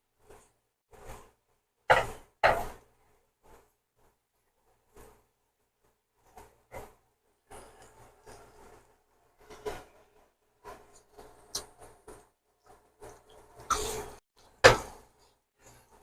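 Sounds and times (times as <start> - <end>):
cookware and cupboards clattering: 1.9 - 2.8
rustling scrape: 4.8 - 16.0.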